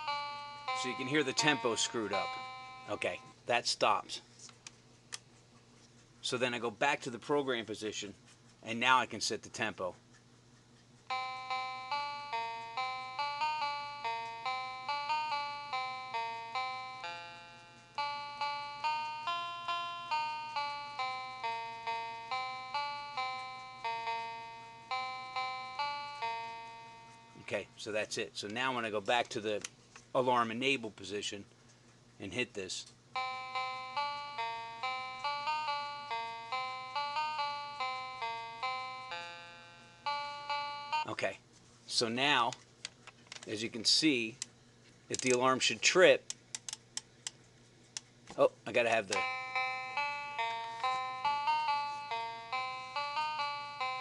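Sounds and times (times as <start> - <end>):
alarm clock electronic chime melody: 0.0 - 3.2, 11.1 - 27.4, 33.2 - 41.2, 49.2 - 54.0.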